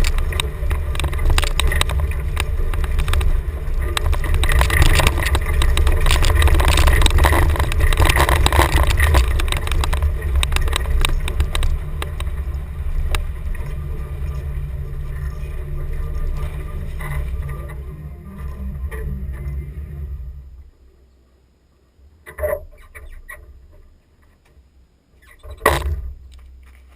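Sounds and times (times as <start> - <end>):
vehicle knocks and rattles: 0.0 - 17.9
engine rumble: 0.0 - 26.9.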